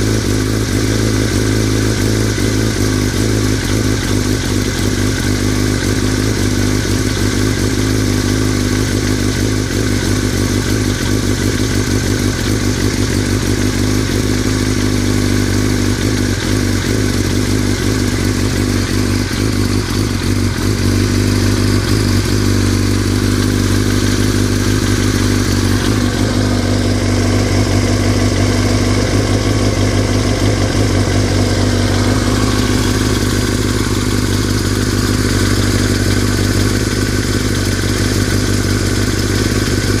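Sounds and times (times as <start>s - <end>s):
motorcycle engine idling with rattle: 0.0s - 40.0s.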